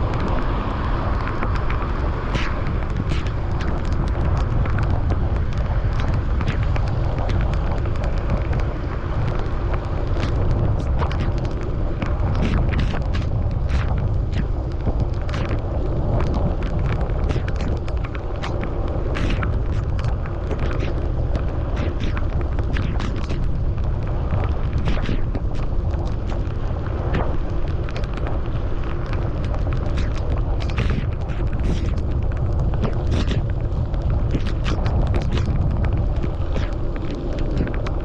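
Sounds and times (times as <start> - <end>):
wind rumbling on microphone: 0.0 - 38.0
sharp ticks and taps: 1.2 - 28.4.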